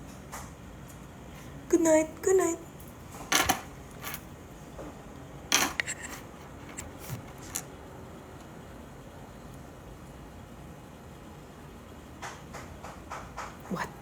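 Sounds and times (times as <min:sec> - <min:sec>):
handling clicks and rustles: 0:02.8 - 0:08.5.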